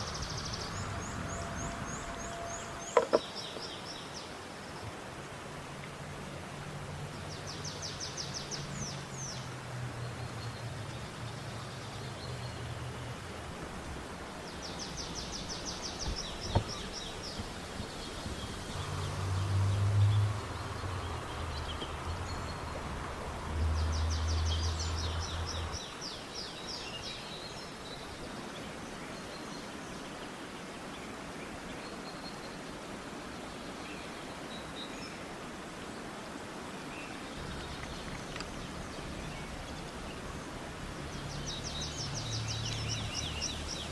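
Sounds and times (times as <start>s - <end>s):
low rumbling: 0.0s - 3.3s
steady outdoor hiss: 0.0s - 43.9s.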